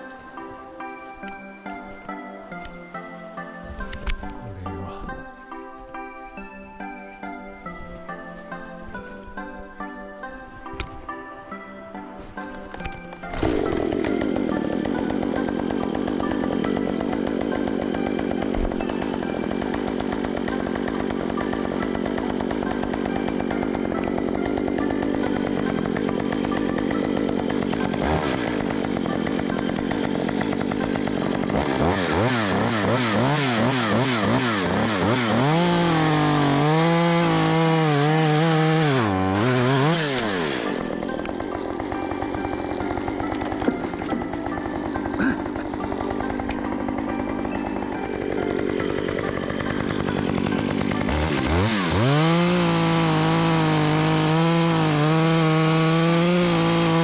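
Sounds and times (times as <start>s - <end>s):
chainsaw running and revving: 12.4s - 57.0s.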